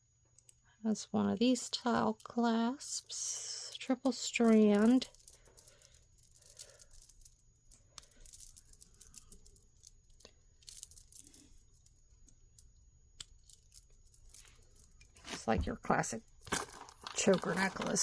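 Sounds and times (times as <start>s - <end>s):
necklace beads clicking: 3.1s - 15.4s.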